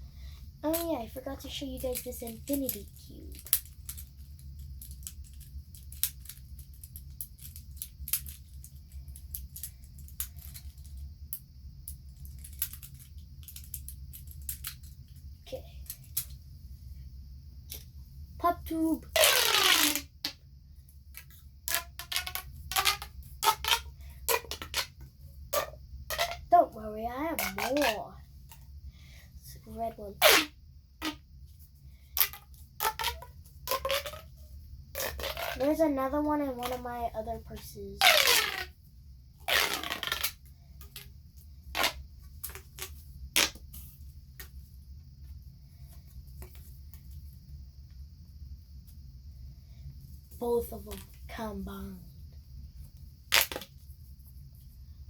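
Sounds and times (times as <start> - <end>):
plastic tubes clicking: 0.6 - 0.9, 1.8 - 15.0, 19.1 - 20.4, 21.1 - 26.4, 27.4 - 28.6, 32.2 - 34.3, 35.0 - 35.7, 38.0 - 38.7, 39.5 - 41.1
plastic pop tube zipping: 19.1 - 20.4, 21.7 - 26.4, 27.4 - 28.0, 30.2 - 31.2, 32.2 - 34.3, 34.9 - 35.7, 38.0 - 38.7, 39.4 - 40.4, 41.7 - 43.6, 53.3 - 53.7.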